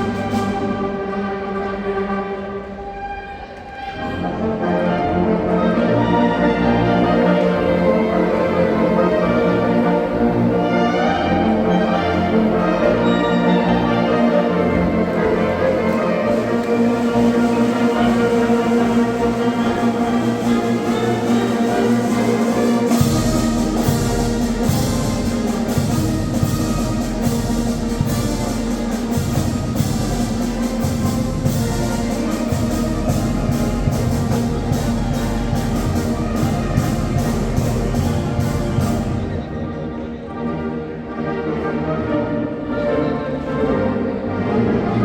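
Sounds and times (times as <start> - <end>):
brass and woodwind chords: 0.0 - 45.0
drums and cymbals beat: 22.8 - 39.3.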